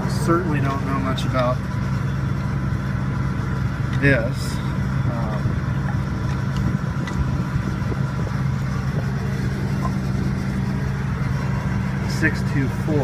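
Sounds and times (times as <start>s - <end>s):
heavy machine engine idling: 0.0s - 13.0s.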